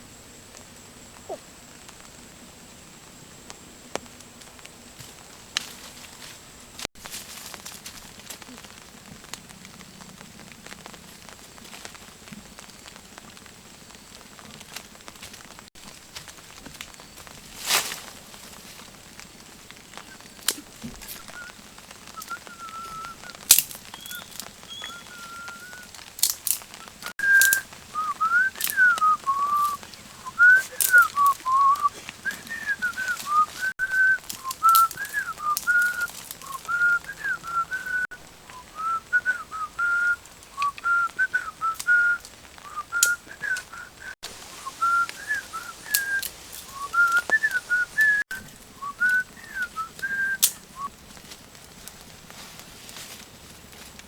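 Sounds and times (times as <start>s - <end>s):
person whistling: 21.1s - 21.6s, 22.2s - 25.9s, 26.8s - 50.9s.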